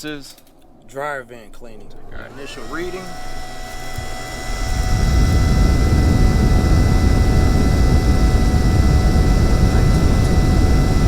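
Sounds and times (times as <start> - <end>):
faint steady whine: 0.0 - 11.0
air rushing from dryer vent: 1.6 - 11.0.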